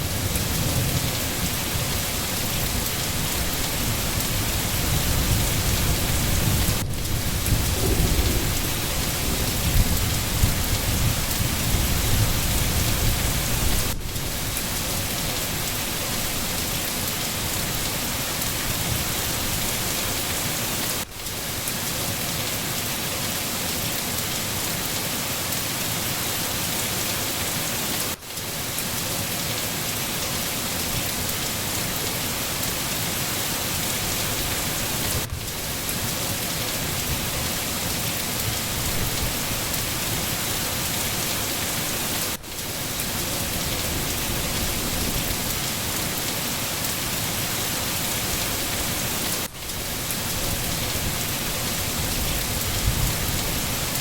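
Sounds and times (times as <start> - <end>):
dense rainfall: 0.0 - 54.0.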